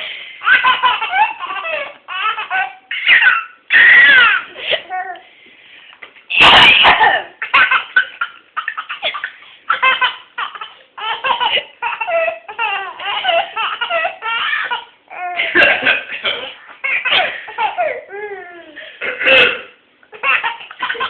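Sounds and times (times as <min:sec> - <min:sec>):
baby laughing: 0:00.0 - 0:05.2, 0:06.4 - 0:18.9, 0:20.1 - 0:21.0
woman coughing: 0:06.3 - 0:07.4, 0:19.0 - 0:19.8.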